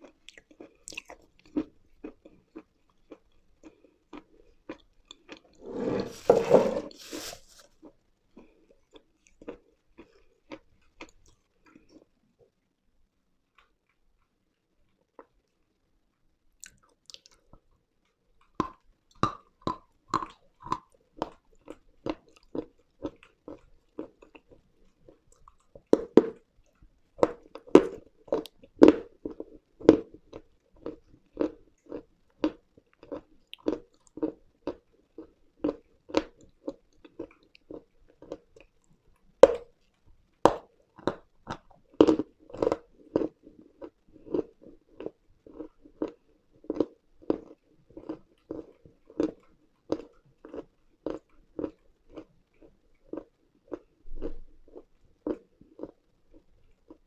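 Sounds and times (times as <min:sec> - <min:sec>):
crisp crunching of brittle chalk: 0:06.1 - 0:07.8.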